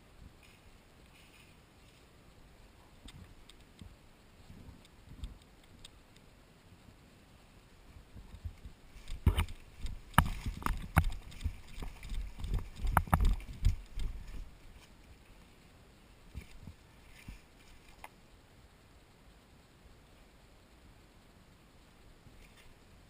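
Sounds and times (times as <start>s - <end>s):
low thuds: 8.2s - 14.5s
sharp knocks and clicks: 8.4s - 14.4s.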